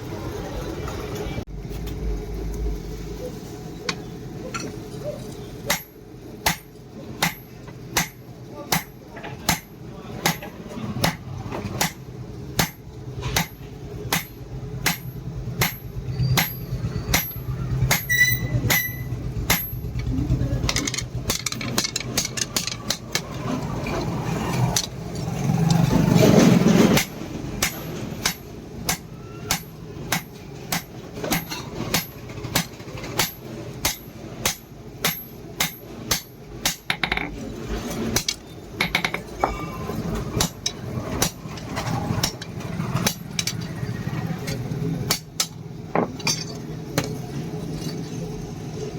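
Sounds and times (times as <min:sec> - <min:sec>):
hammer striking steel on anvil: 0:05.7 - 0:11.2, 0:11.8 - 0:20.1, 0:26.9 - 0:37.3, 0:40.4 - 0:41.5.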